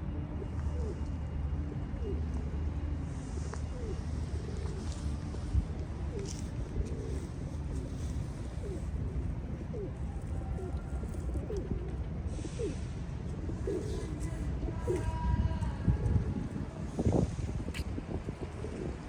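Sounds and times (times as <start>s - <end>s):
low background rumble: 0.0s - 19.0s
pigeons cooing: 2.0s - 2.4s, 3.3s - 15.2s, 18.3s - 19.0s.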